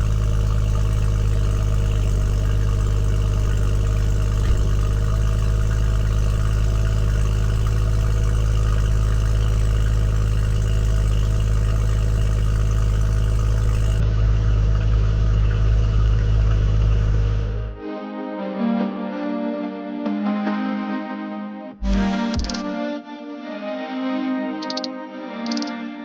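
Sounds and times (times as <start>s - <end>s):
car engine idling: 0.0s - 17.8s, 21.8s - 22.7s.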